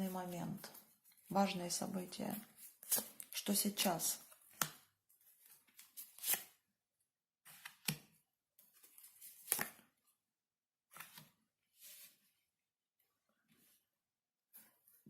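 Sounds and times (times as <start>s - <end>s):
cards rustling: 4.3s - 6.5s, 8.7s - 9.8s
sharp card snaps: 9.4s - 9.8s.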